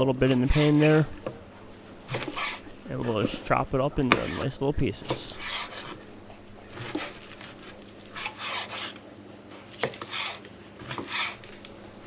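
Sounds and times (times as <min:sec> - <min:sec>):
knife chopping on cutting board: 0:04.1 - 0:04.4.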